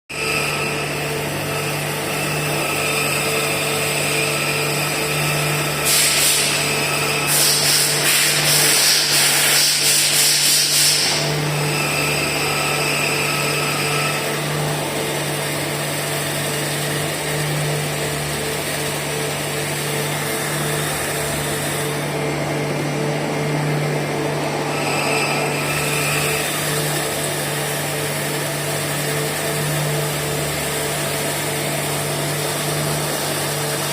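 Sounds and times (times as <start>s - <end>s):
lathe motor hum: 0.1s - 33.9s
loud pulsing hiss: 5.7s - 11.2s.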